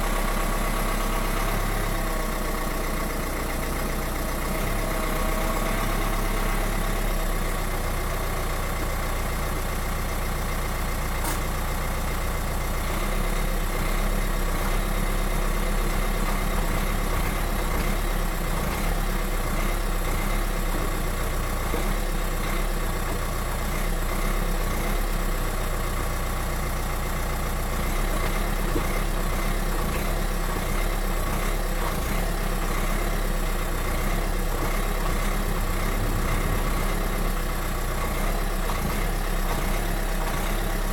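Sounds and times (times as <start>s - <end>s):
car engine running: 0.0s - 40.9s
transmission whine: 35.6s - 38.3s.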